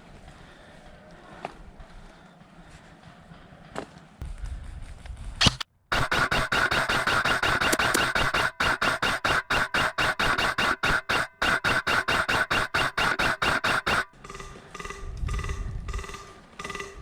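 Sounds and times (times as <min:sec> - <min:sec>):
electric toy gun firing: 0:05.4 - 0:14.2.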